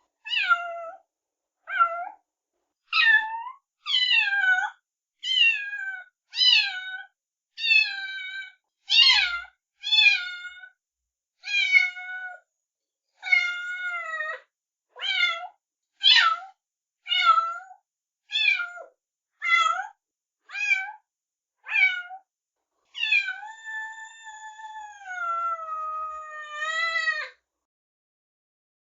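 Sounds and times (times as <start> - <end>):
kitten meowing: 0.3 - 1.0, 3.0 - 7.0, 7.6 - 10.6, 11.5 - 12.4, 13.2 - 14.2, 17.1 - 17.7, 18.3 - 21.0, 21.7 - 22.2, 23.0 - 27.4.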